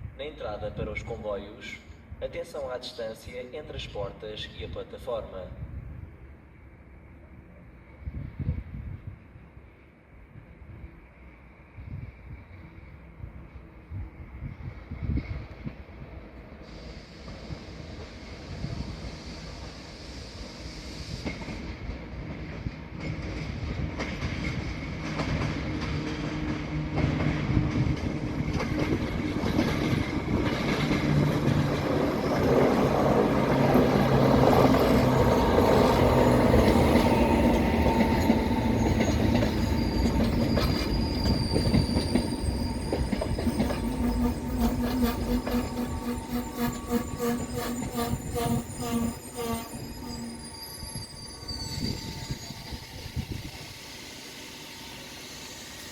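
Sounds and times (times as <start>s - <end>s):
train passing: 0.0s - 55.9s
high wheel squeal: 31.5s - 55.9s.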